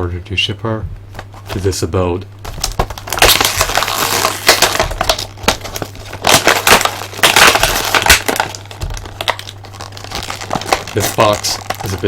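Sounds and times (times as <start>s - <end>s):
cardboard and plastic crackling: 2.4s - 12.0s
packaging clicks: 2.5s - 12.0s.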